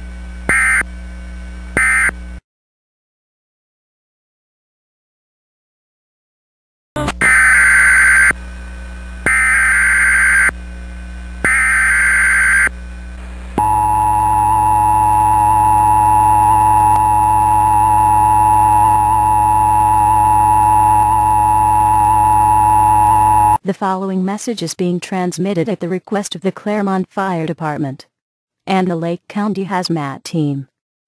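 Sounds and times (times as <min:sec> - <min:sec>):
screeching digital data bursts: 0:13.6 - 0:23.6
two-tone alert signal: 0:13.6 - 0:23.6.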